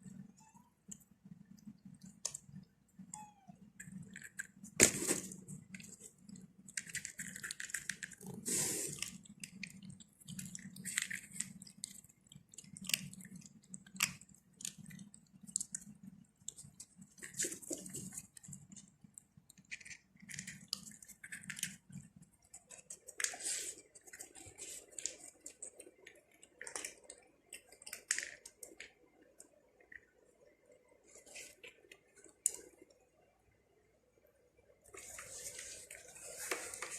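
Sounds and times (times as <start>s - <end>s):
low steady hum: 0.0s - 36.9s
cat chewing food: 3.7s - 32.9s.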